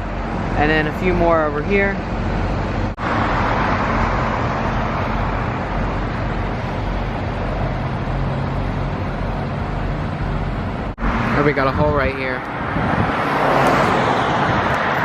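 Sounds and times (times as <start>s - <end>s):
road traffic: 0.0s - 15.0s.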